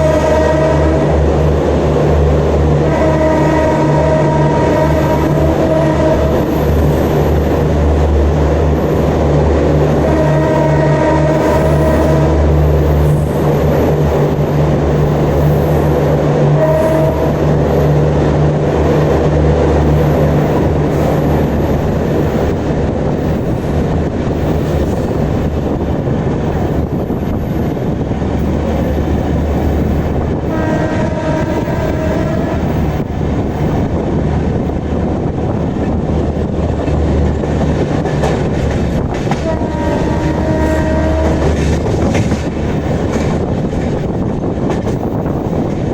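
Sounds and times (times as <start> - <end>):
locomotive horn: 0.0 - 1.5, 2.4 - 6.8, 9.9 - 13.4, 16.5 - 17.8, 30.4 - 32.8, 39.3 - 41.8
train running at speed: 0.0 - 45.9.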